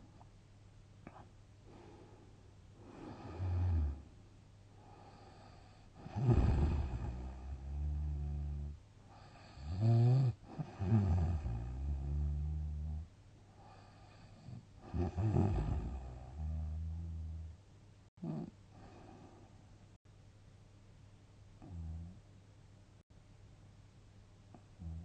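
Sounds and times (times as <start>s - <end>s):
person snoring: 2.8s - 4.1s, 4.8s - 17.5s, 18.2s - 19.5s.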